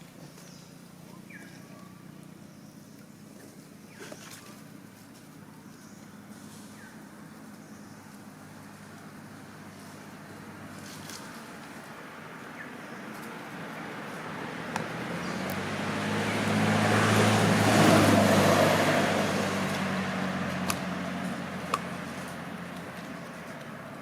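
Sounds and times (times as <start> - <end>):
vehicle driving past: 8.4 - 24.0.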